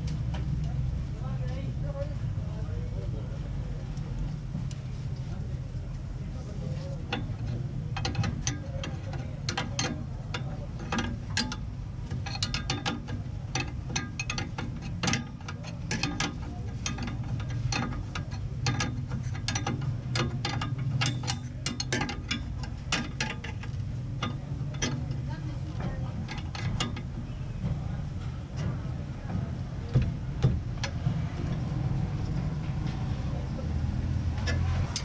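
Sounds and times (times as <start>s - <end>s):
steady low hum: 0.0s - 35.0s
metallic clicks and clinks: 7.0s - 27.4s.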